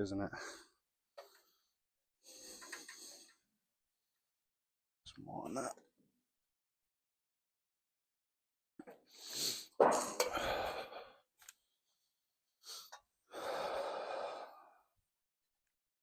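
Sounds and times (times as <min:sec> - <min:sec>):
breathy exhale: 0:12.7 - 0:14.8.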